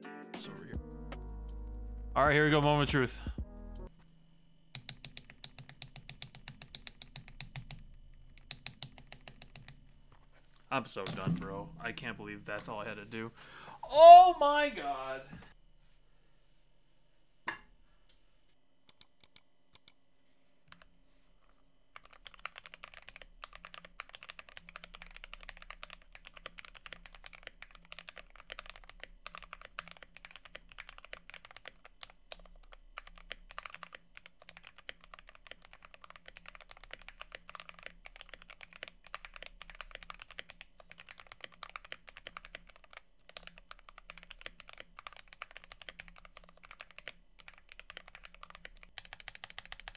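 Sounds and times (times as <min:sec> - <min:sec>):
typing on mechanical keyboard: 0:04.8 - 0:09.8, 0:22.0 - 0:49.9.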